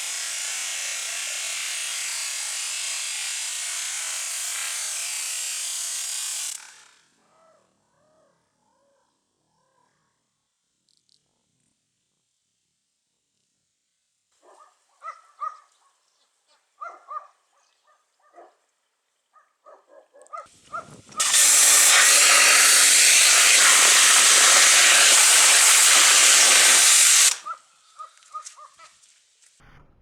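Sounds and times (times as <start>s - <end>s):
pressure washer spraying: 0.0s - 6.6s, 21.2s - 27.5s.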